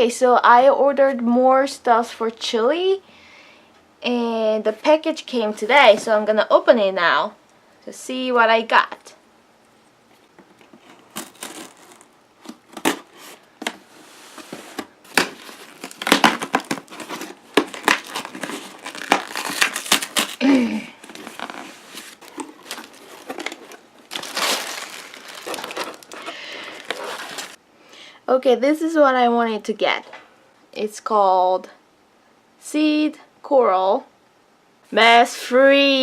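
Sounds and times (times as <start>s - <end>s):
packaging crinkling and tearing: 10.5s - 27.6s.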